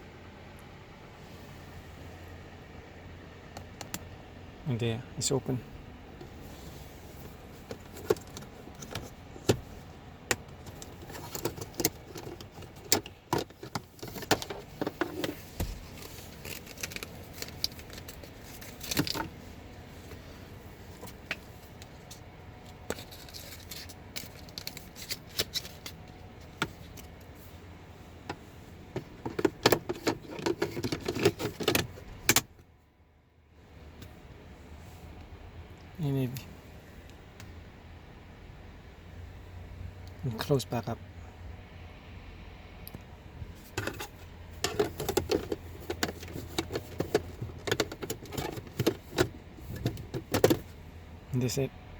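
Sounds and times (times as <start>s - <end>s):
plastic clicks and rattles: 29.0s - 32.4s, 43.8s - 50.6s.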